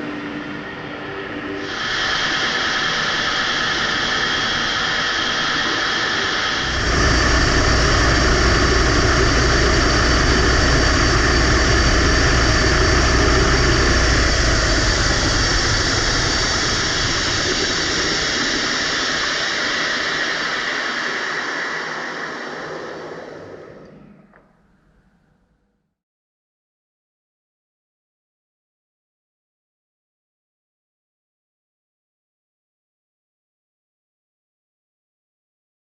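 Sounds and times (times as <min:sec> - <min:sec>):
lathe gear whine: 0:00.0 - 0:24.4
rushing air noise: 0:00.0 - 0:25.1
deep rumble: 0:01.4 - 0:25.2.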